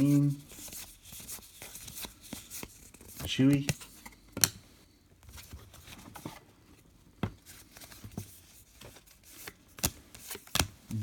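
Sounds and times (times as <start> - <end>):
trading cards rustling: 0.0 - 4.6, 7.4 - 11.0.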